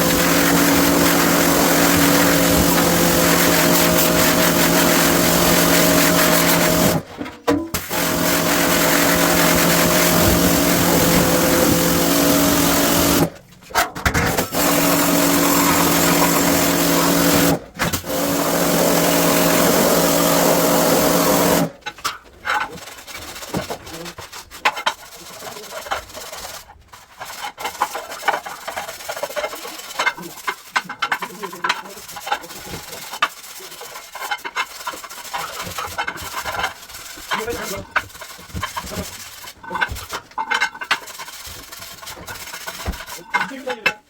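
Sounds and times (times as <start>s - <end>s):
motor-driven tool running: 0.0s - 7.0s, 7.8s - 13.3s, 14.4s - 21.7s.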